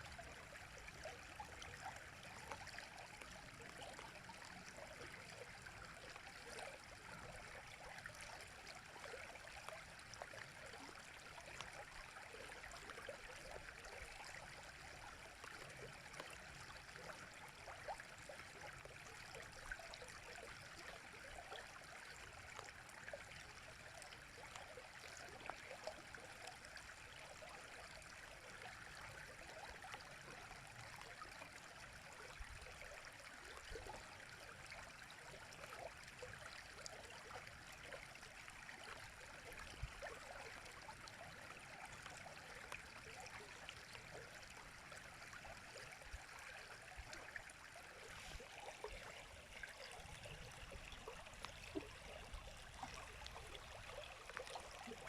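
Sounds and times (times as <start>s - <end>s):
river water flowing: 29.2s - 55.0s.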